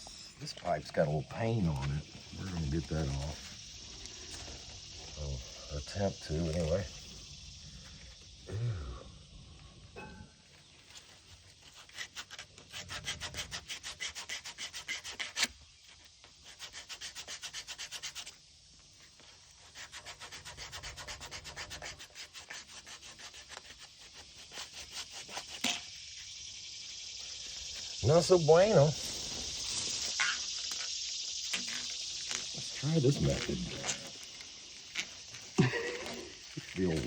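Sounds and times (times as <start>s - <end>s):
sandpaper rubbing on pipe: 11.0s - 18.4s, 19.1s - 25.7s.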